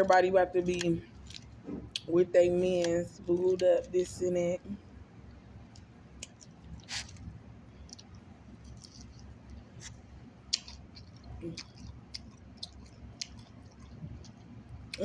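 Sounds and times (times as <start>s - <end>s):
person chewing food: 0.8s - 2.0s, 5.2s - 15.0s.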